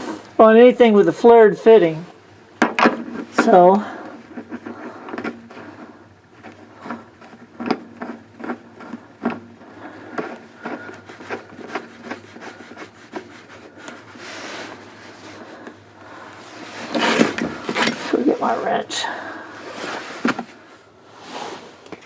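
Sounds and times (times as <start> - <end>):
hand tools and metal fittings clicking: 16.9 - 18.3.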